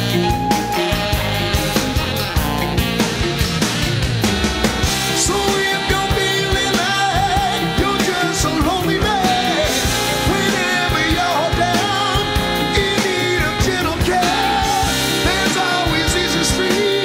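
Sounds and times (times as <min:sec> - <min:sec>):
rock song with vocals and drums: 0:00.0 - 0:17.0.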